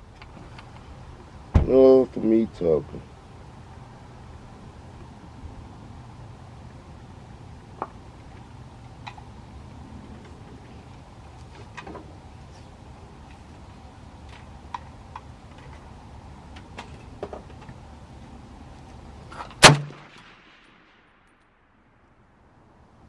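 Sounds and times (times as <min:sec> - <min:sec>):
rifle shot: 0:19.6 - 0:21.4.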